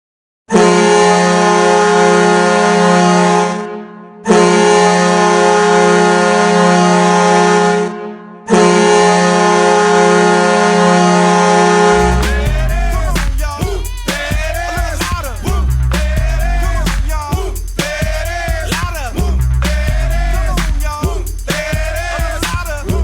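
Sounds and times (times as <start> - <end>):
goal horn blasts: 0.5 - 12.5
music with heavy beat: 11.9 - 23.0.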